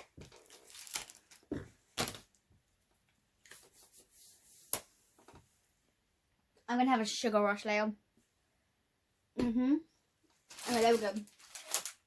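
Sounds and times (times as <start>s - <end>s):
plastic packaging crinkling: 0.0s - 2.4s, 10.4s - 12.0s.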